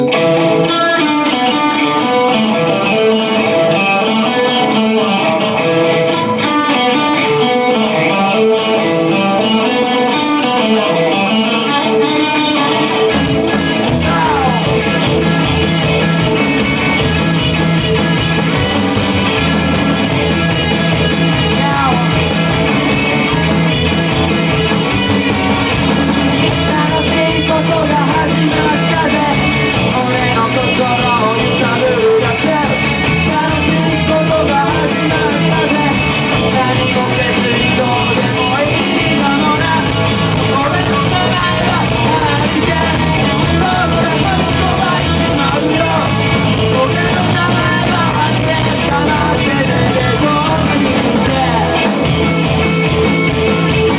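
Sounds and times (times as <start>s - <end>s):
electric guitar: 0.0s - 53.9s
person singing: 0.0s - 53.9s
drums and bass: 13.0s - 53.9s.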